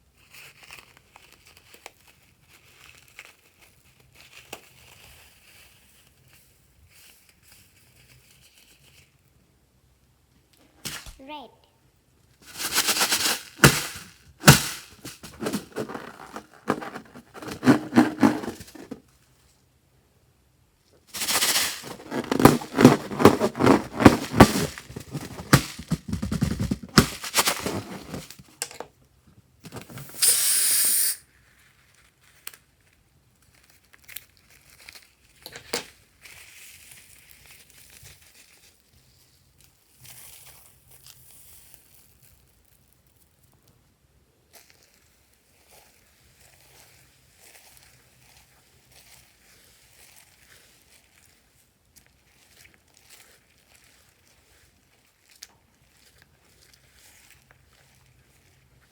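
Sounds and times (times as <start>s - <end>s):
short steady hiss: 30.0s - 31.2s.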